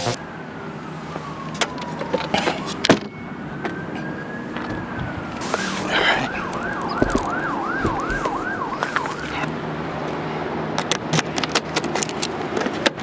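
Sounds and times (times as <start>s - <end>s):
siren yelping: 0.0s - 9.5s.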